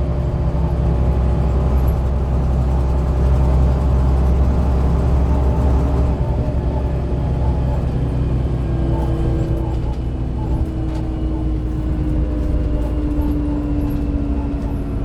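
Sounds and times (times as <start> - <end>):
bus diesel engine running: 0.0 - 15.0
engine whine: 0.0 - 15.0.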